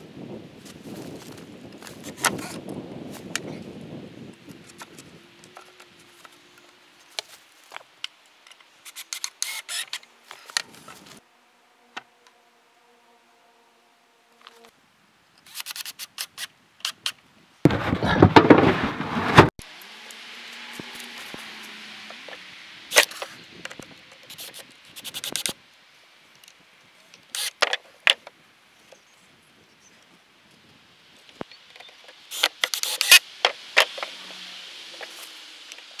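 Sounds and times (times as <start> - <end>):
brief scraping rush: 17.7 - 19.6
scratching and scraping: 17.7 - 19.6, 20.6 - 25.6.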